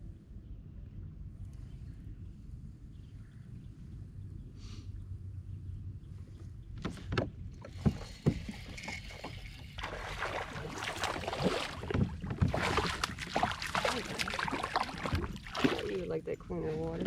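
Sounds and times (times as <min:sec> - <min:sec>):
water splashing: 0:07.7 - 0:17.0.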